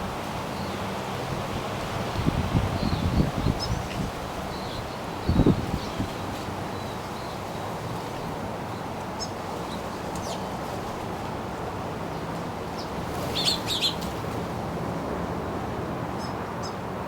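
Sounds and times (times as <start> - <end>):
wind noise: 0.0 - 6.7
birds chirping: 12.8 - 14.2.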